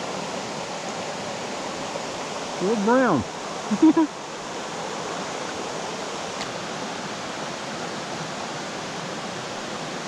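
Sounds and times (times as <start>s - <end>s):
river rushing over rocks: 0.0s - 10.0s
small click: 6.4s - 6.6s.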